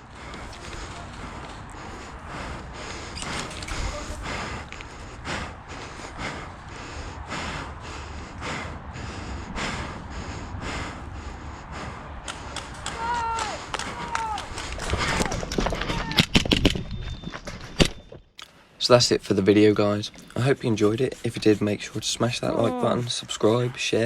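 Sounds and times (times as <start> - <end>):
steady low rumble: 0.0 - 13.0
person breathing hard: 0.0 - 15.8, 18.4 - 24.0.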